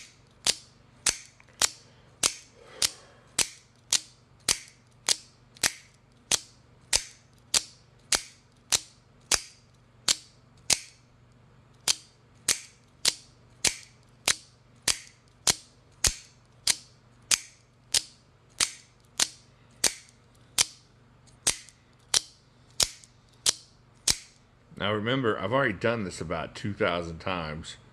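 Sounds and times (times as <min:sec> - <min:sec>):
knife blade snapping: 0:00.0 - 0:11.0, 0:11.8 - 0:20.8.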